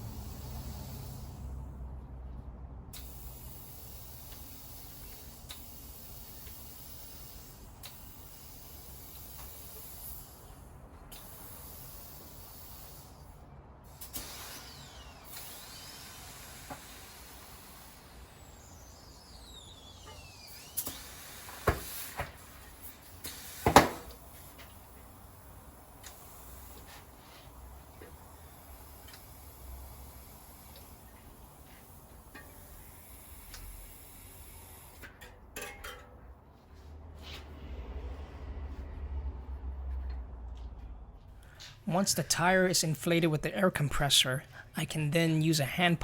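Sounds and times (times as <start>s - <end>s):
compressed air hissing from hose: 0.0s - 1.7s, 2.9s - 35.1s
loud sharp pops: 23.3s - 24.2s.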